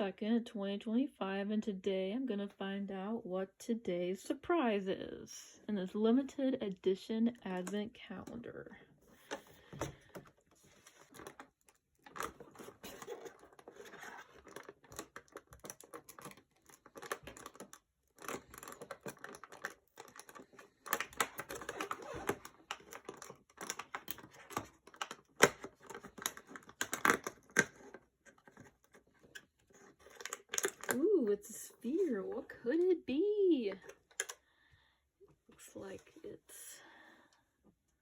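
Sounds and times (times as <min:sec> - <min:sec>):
packaging tearing and crinkling: 0:11.0 - 0:31.0.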